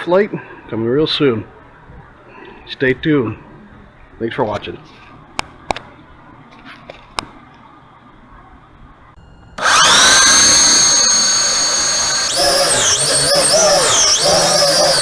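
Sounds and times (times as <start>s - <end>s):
quadcopter motors whining: 9.6s - 15.0s.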